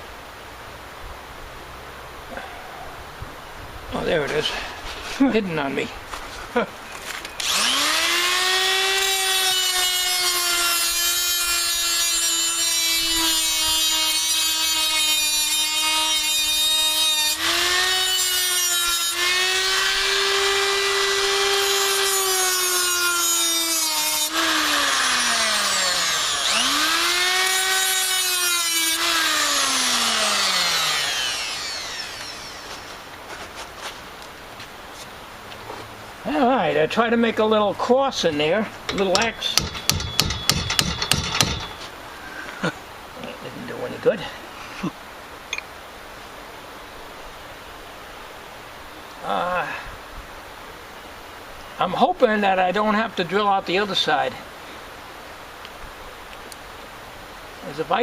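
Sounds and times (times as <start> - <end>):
angle grinder grinding metal: 7.4 - 33.0, 38.9 - 41.9.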